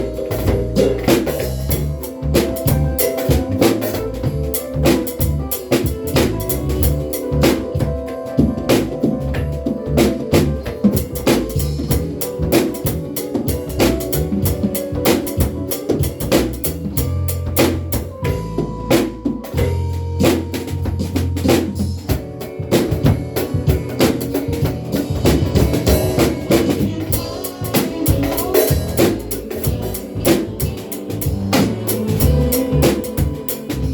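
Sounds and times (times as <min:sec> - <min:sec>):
drum kit groove: 0:00.0 - 0:33.9
recorded song with bass and keyboard: 0:00.0 - 0:33.9.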